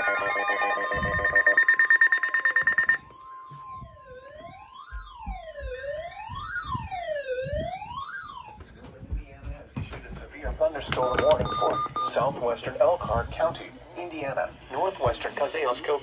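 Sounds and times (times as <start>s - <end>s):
rapid high beeping: 0.0s - 3.4s, 11.0s - 12.2s
steady warning tone: 0.0s - 8.6s
wailing siren tone: 0.0s - 8.6s.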